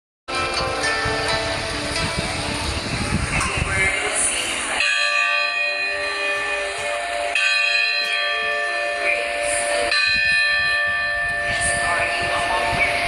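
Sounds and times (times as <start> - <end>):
carillon bells ringing: 4.7 - 13.0.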